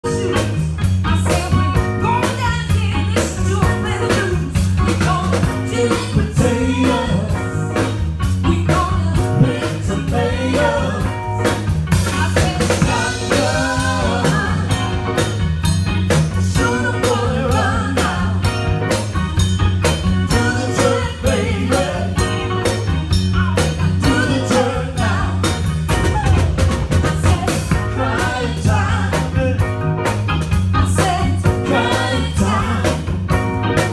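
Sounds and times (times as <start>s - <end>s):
band playing: 0.0s - 33.9s
bass line: 0.0s - 33.9s
drum beat: 9.2s - 28.7s
person singing: 12.1s - 15.2s.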